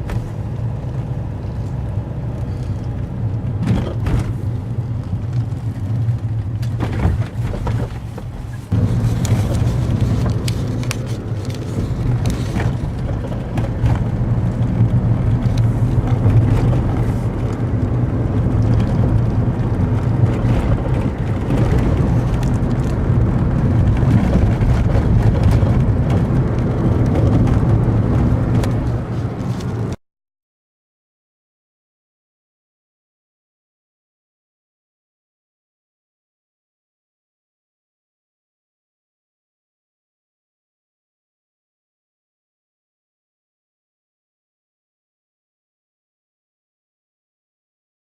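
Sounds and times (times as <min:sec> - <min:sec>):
car engine and road rumble: 0:00.0 - 0:30.0.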